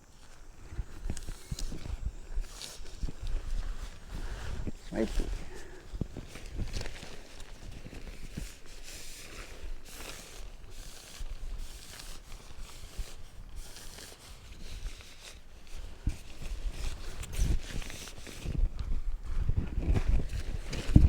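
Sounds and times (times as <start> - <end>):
tent fabric rustling: 0.0 - 21.0.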